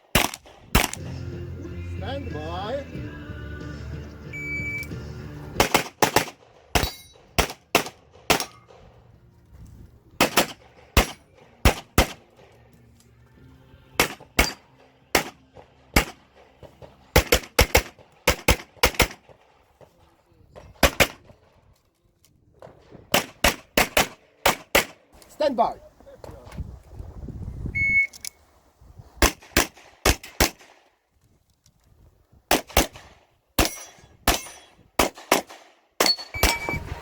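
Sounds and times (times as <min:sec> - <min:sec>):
pistol shots: 0:00.1 - 0:01.0, 0:05.6 - 0:08.9, 0:10.2 - 0:12.6, 0:14.0 - 0:19.6, 0:20.7 - 0:21.3, 0:23.1 - 0:25.1, 0:29.2 - 0:30.9, 0:32.5 - 0:36.8
shot timer beep: 0:04.3 - 0:04.9, 0:36.3 - 0:37.0.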